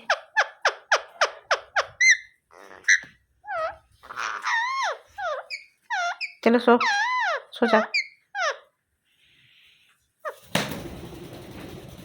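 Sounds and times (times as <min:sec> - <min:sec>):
parakeet calling: 0:00.0 - 0:08.8.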